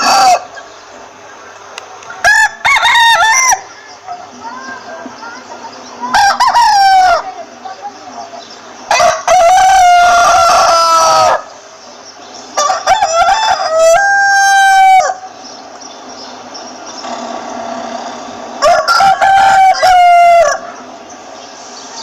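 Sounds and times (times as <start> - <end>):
rooster crowing: 2.2 - 3.7, 8.9 - 11.5, 12.6 - 15.3, 18.6 - 20.8.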